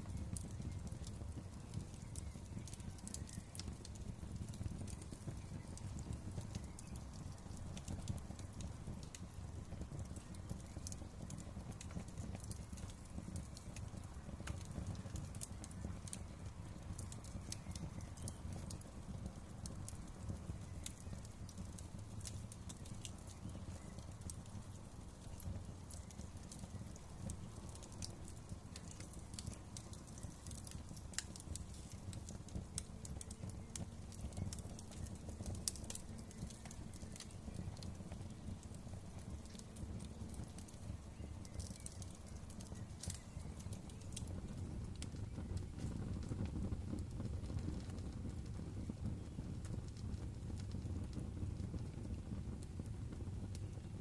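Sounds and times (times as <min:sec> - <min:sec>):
fire crackling and popping: 0:00.0 - 0:54.0
low rumble of burning: 0:00.0 - 0:54.0.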